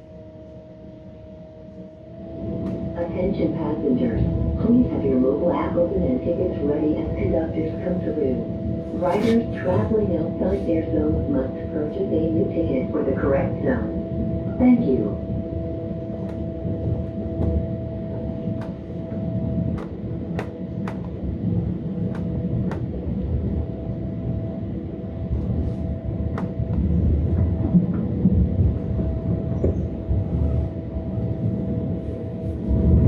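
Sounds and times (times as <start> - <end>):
wheels rumbling on rail: 15.0 - 33.0.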